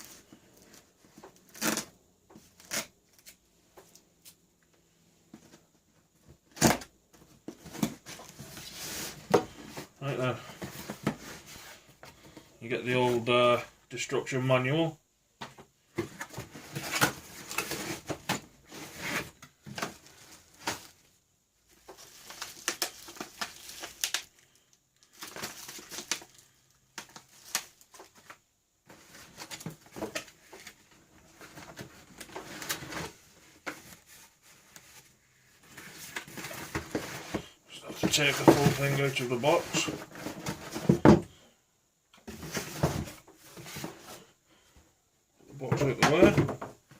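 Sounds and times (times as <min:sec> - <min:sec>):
packaging rustling and crinkling: 0:16.0 - 0:41.4.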